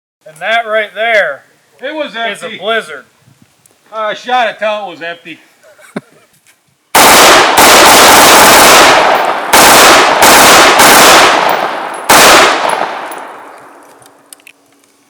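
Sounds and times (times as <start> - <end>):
loud gunshots with ringing echo: 7.0 - 13.6.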